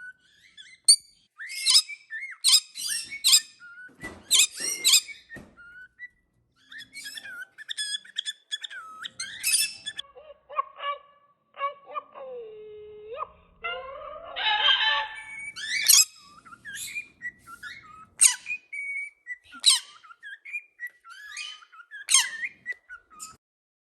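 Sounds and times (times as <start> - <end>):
parrot whistling: 0.0 - 10.0, 14.4 - 23.4
parrot screeching calls: 0.3 - 3.6, 4.3 - 5.3, 6.6 - 12.0, 13.6 - 23.4.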